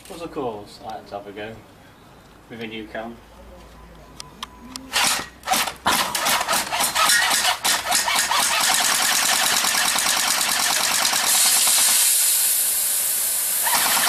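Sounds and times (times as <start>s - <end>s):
rifle firing full-auto burst: 5.0s - 12.2s, 13.6s - 14.0s
gas hissing from aerosol can: 11.2s - 14.0s.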